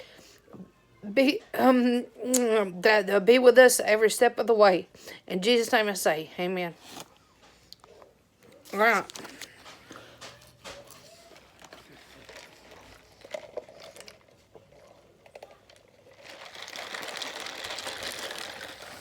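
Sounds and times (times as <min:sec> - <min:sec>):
food packaging rustling: 0:06.7 - 0:19.0.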